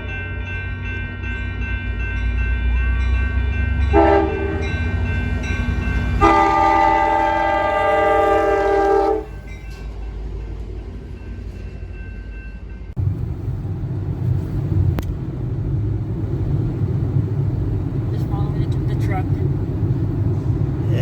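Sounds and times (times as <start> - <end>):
train horn blasts: 3.9 - 4.9, 6.0 - 9.4
low rumble: 12.9 - 21.0.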